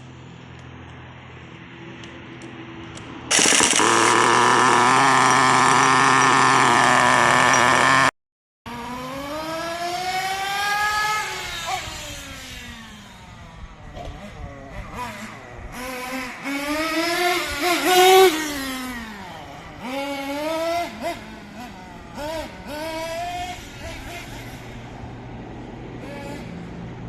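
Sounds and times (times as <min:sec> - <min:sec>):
rc car nitro engine buzzing: 0:03.3 - 0:08.2.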